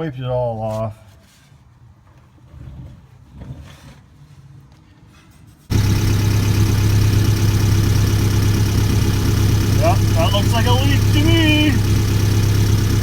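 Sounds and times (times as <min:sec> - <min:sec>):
car engine idling: 0:05.7 - 0:13.0.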